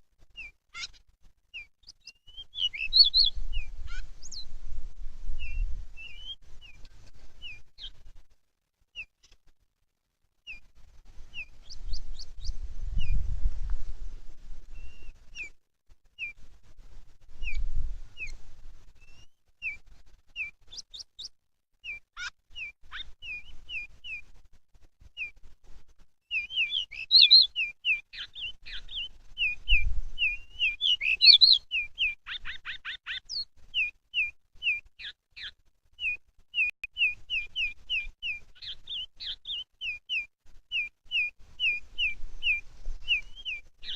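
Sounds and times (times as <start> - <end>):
bird chirping and twittering: 0.4 - 4.6, 5.4 - 8.0, 11.3 - 13.3, 14.7 - 15.6, 17.4 - 18.4, 19.0 - 19.8, 20.4 - 24.2, 26.3 - 43.9.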